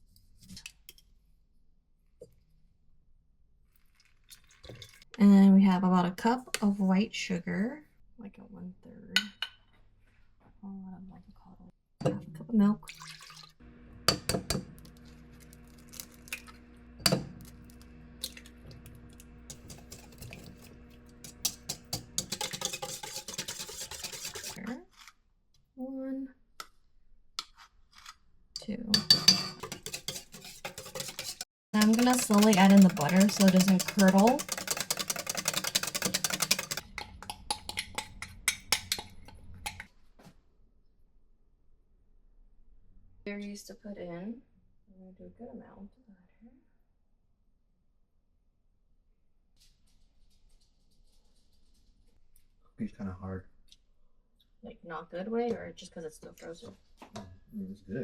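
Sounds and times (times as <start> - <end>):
beaters clicking against bowl: 19.5 - 24.6, 29.6 - 39.8
dishes and utensils clinking: 19.5 - 24.6, 29.0 - 39.8.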